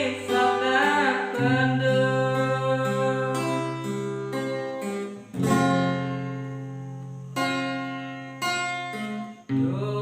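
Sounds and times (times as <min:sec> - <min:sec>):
acoustic guitar chords: 0:00.0 - 0:10.0.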